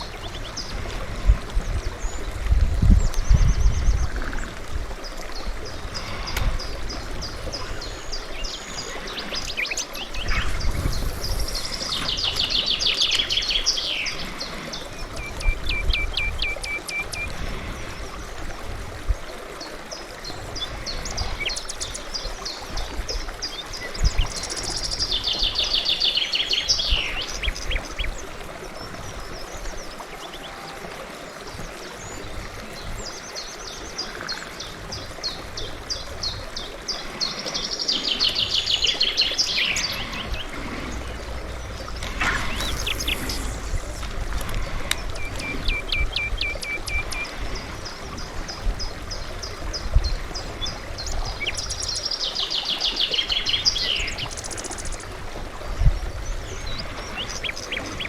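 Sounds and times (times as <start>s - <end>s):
birds calling short notes: 39.4s - 47.6s
steady low rumble: 39.8s - 46.2s
bird singing descending phrase: 41.6s - 44.2s.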